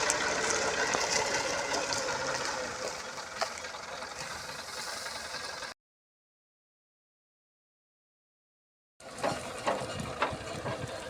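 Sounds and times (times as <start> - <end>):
wheat thresher running: 0.0 - 5.7.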